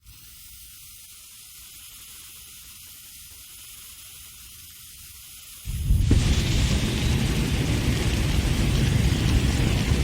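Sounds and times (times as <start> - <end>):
flamethrower hissing: 0.0 - 10.0
faint low rumble: 5.7 - 10.0.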